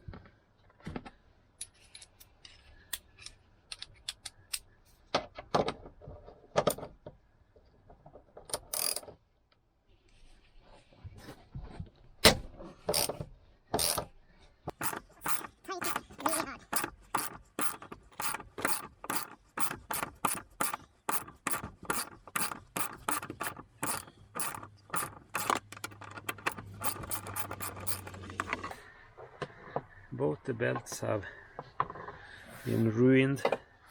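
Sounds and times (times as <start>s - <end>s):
ratchet wrench clicking: 8.7s - 9.0s, 12.9s - 13.2s, 13.8s - 14.0s, 14.7s - 28.8s.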